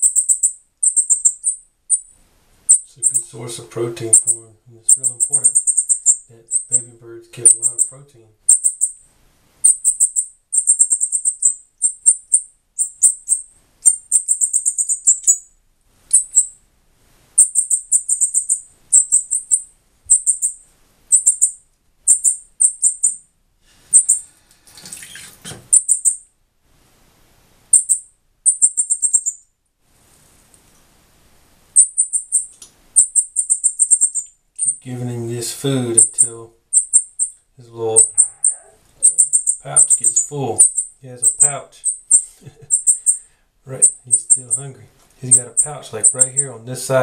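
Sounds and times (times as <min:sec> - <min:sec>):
young bird begging chirps: 0:00.0 - 0:02.1, 0:02.7 - 0:03.3, 0:04.0 - 0:09.0, 0:09.6 - 0:15.5, 0:16.1 - 0:16.6, 0:17.4 - 0:23.2, 0:23.9 - 0:24.2, 0:25.7 - 0:26.2, 0:27.7 - 0:29.4, 0:31.8 - 0:34.8, 0:35.9 - 0:46.6
rustling: 0:29.8 - 0:31.8.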